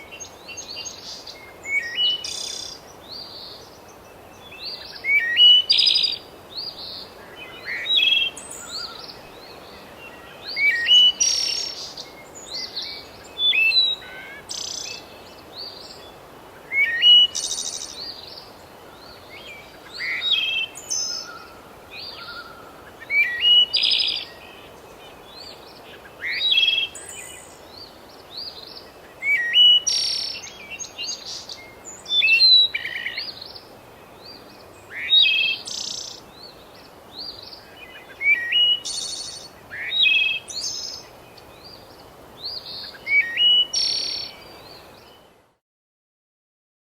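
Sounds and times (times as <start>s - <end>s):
songbird whistles and trills: 7.4s - 18.4s, 34.2s - 36.6s, 37.2s - 41.8s, 42.4s - 45.3s.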